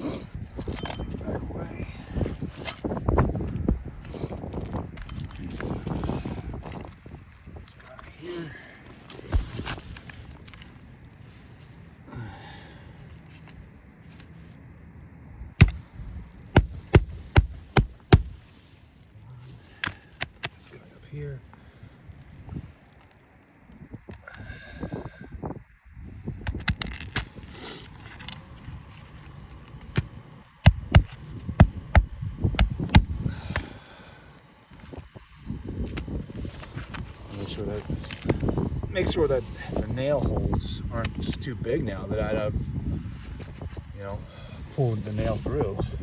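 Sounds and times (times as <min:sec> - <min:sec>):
wind noise: 0:00.0 - 0:11.5, 0:23.6 - 0:33.9, 0:34.7 - 0:46.0
hammer blows on a shingle roof: 0:15.6 - 0:15.8, 0:16.5 - 0:18.5, 0:30.6 - 0:33.8.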